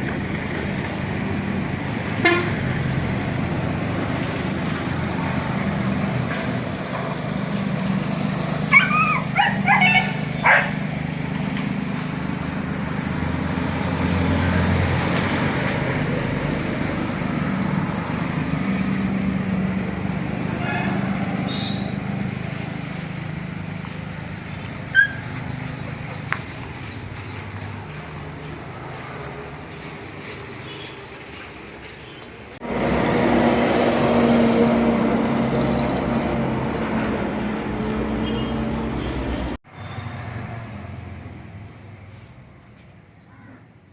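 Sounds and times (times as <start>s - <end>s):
engine humming: 0.0s - 42.9s
dog barking: 8.7s - 10.8s, 24.9s - 26.0s.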